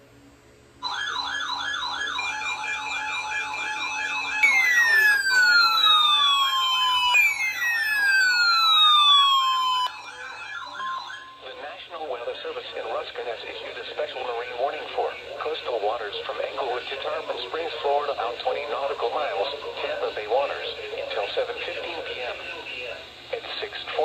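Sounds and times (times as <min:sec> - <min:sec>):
long falling siren wails: 0:00.8 - 0:11.5
fast warbling siren: 0:00.8 - 0:11.7
steady high beep tone: 0:00.9 - 0:11.6.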